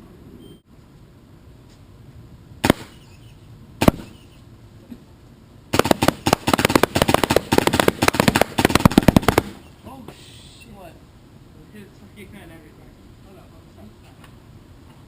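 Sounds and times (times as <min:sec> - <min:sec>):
paintball marker firing: 0:02.6 - 0:03.0, 0:03.8 - 0:04.2, 0:05.7 - 0:09.6.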